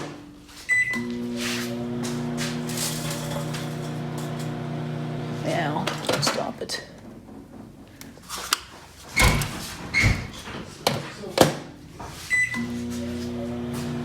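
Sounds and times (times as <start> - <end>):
microwave oven humming: 0.9 - 5.9, 12.4 - 14.0.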